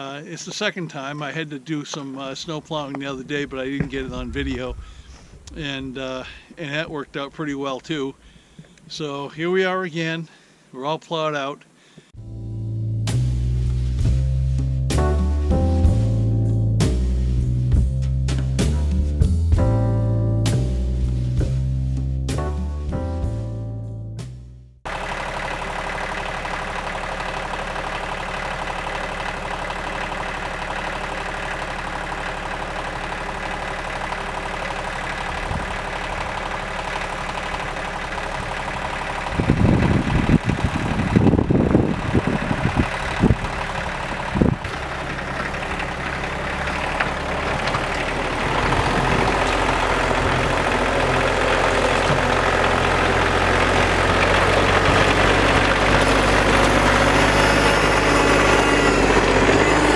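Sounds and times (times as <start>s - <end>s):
loader engine running: 12.2s - 23.5s, 24.8s - 59.9s
loud low thumps: 12.2s - 23.6s.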